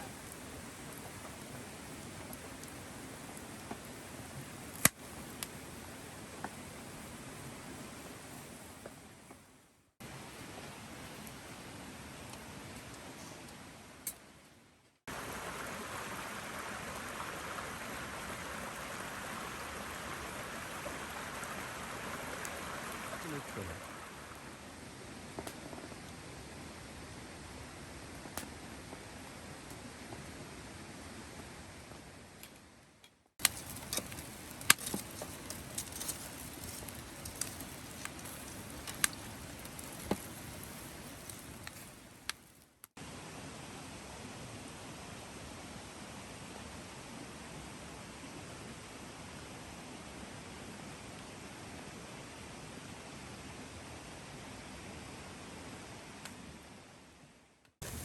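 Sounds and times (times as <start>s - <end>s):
campfire crackling and popping: 0.0s - 9.4s, 15.1s - 24.6s, 25.2s - 26.2s, 28.1s - 30.3s, 33.4s - 43.0s
steady fire hiss: 0.0s - 14.5s, 15.1s - 32.0s, 33.4s - 44.0s
water rushing: 15.1s - 24.6s.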